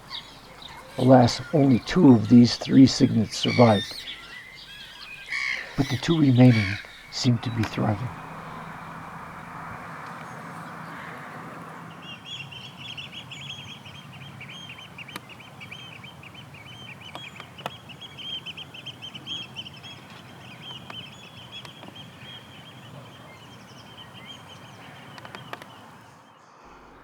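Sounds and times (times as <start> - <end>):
rapid high-pitched bird chirps: 0.0 - 9.5
steady background hiss: 0.0 - 27.0.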